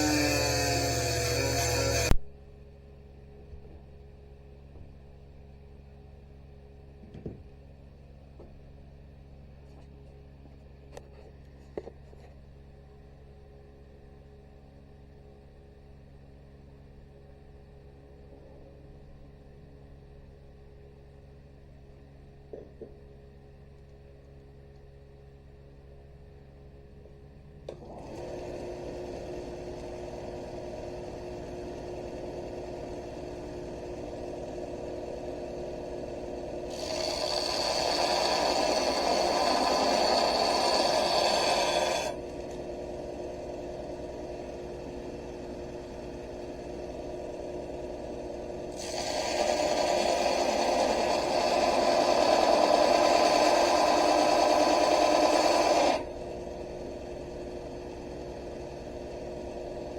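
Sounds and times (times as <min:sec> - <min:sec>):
electric grinder grinding steel: 0:00.0 - 0:02.2, 0:27.8 - 0:59.9.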